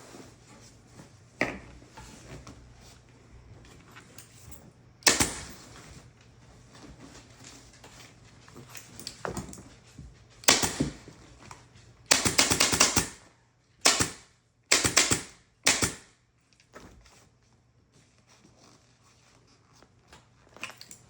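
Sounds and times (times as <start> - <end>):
staple gun firing: 5.0 - 5.6, 10.4 - 11.0, 13.9 - 16.1.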